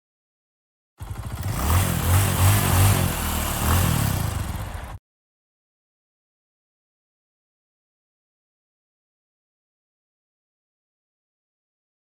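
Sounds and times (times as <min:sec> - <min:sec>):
motorcycle engine revving: 0:01.0 - 0:05.0.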